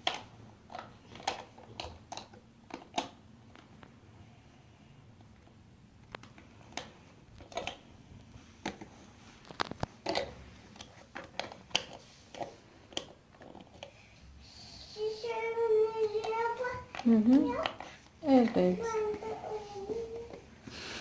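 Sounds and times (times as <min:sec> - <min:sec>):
plastic blocks clicking: 0:00.0 - 0:03.2, 0:06.1 - 0:07.8, 0:08.6 - 0:13.9.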